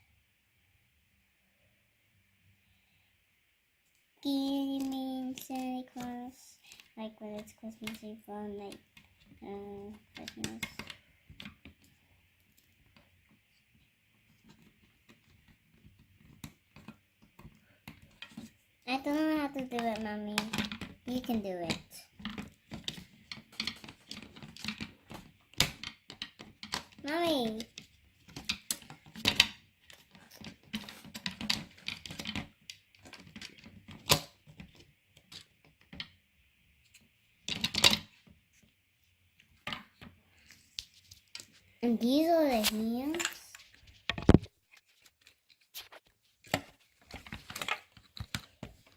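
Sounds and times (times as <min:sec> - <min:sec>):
plastic parts clicking and rattling: 0:04.3 - 0:13.4, 0:14.3 - 0:36.2, 0:36.9 - 0:38.4, 0:42.5 - 0:48.9.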